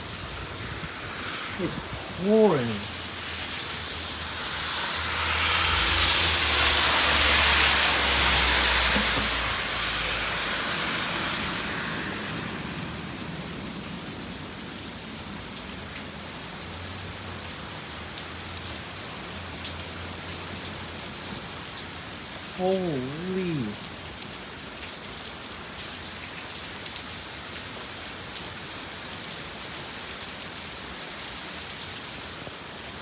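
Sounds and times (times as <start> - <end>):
wind gusts buffeting microphone: 0.0 - 2.2
heavy rain pouring: 0.0 - 33.0.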